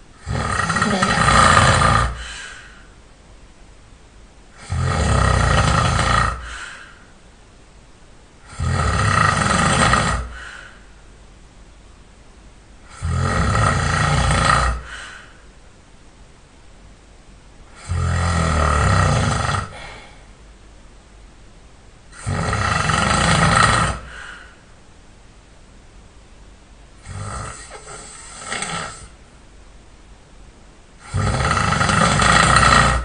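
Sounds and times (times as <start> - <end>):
person snoring loudly: 0.1 - 2.8, 4.6 - 7.0, 8.4 - 10.8, 12.8 - 15.3, 17.7 - 20.2, 22.1 - 24.6, 27.0 - 29.2, 31.0 - 33.0.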